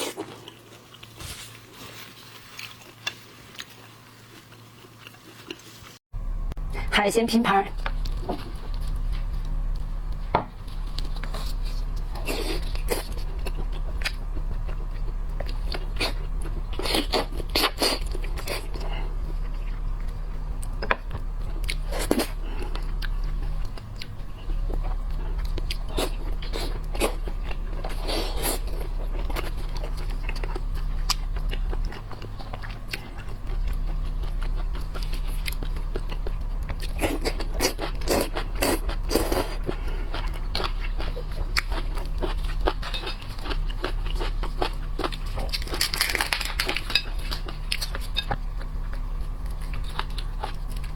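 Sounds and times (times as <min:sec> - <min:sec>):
biting and chewing food: 0:00.0 - 0:06.0, 0:07.7 - 0:50.9
steady low hum: 0:00.0 - 0:50.9
crisp crunches and clicks: 0:40.6 - 0:50.9.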